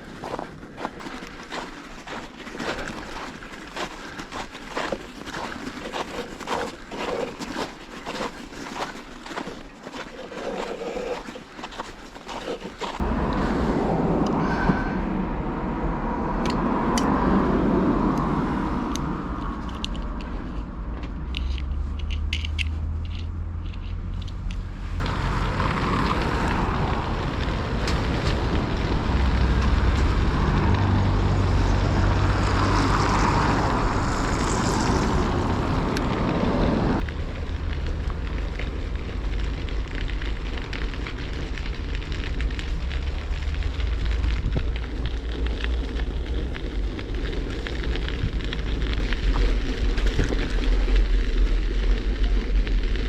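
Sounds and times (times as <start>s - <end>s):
wind buffeting microphone: 24.4s - 53.0s.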